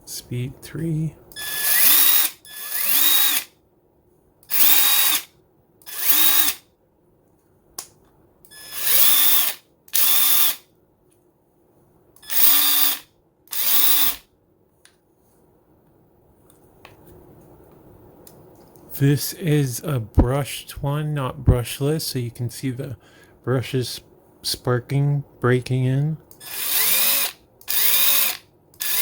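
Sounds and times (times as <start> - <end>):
impact wrench motor whine: 1.4 - 3.5, 4.5 - 5.3, 5.9 - 6.6, 8.6 - 10.6, 12.2 - 14.2, 26.4 - 29.0.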